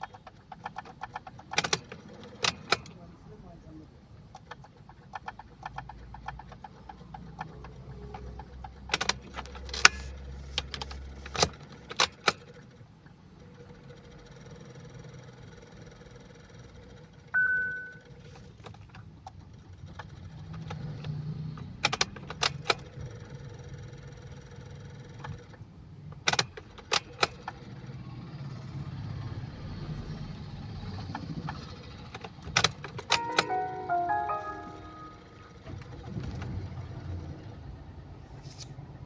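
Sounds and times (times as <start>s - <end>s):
musical notes: 17.4s - 18.0s, 33.1s - 35.8s
electronic warning beep: 17.4s - 18.1s.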